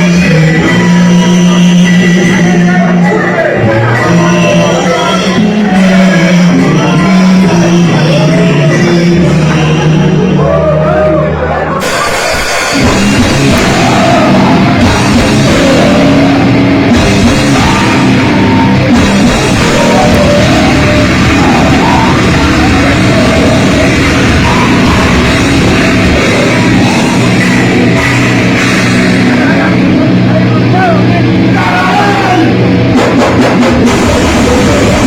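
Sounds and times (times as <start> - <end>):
heavy metal band playing: 0.0 - 35.0.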